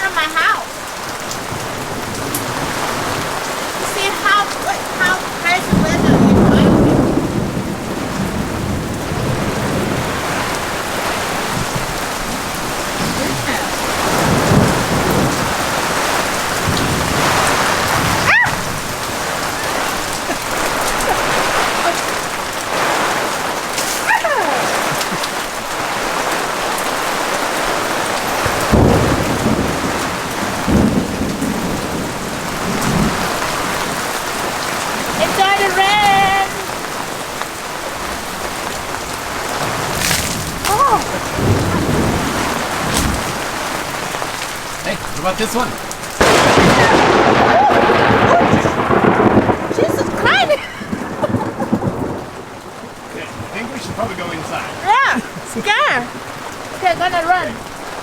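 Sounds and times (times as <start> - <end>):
heavy rain pouring: 0.0 - 58.0
thunder rumbling: 0.0 - 58.0.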